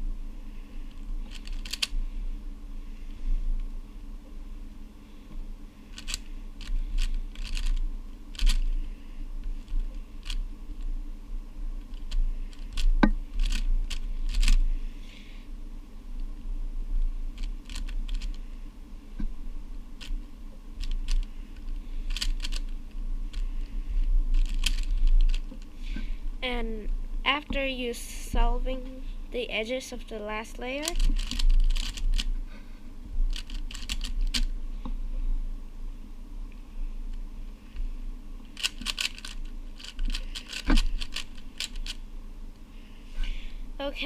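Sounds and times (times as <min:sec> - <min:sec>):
puzzle cube layers clicking: 0:01.3 - 0:01.9, 0:30.8 - 0:32.2, 0:38.6 - 0:42.0.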